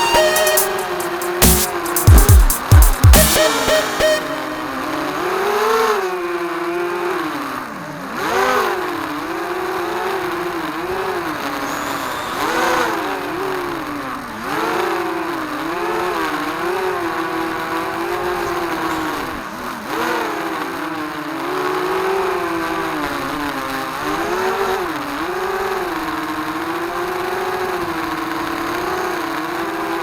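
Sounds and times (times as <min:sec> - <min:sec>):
quadcopter motors whining: 0:10.0 - 0:13.9.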